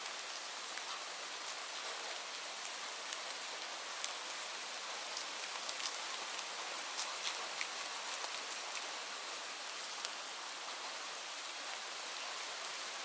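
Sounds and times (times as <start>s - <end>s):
rain falling on leaves: 0.0s - 13.0s
drops ticking on foliage: 5.0s - 10.2s.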